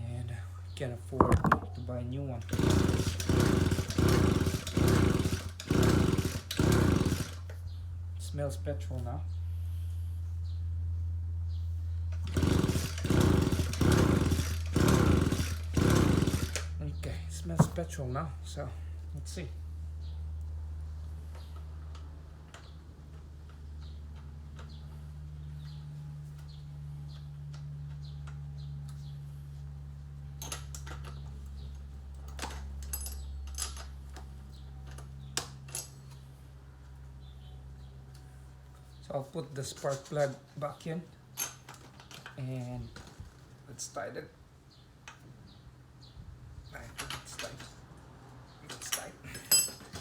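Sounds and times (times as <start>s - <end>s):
engine pull-start cranking: 2.4s - 7.5s, 12.2s - 16.7s, 17.5s - 17.8s
small tools clicking and clinking: 32.2s - 34.3s, 48.7s - 50.0s.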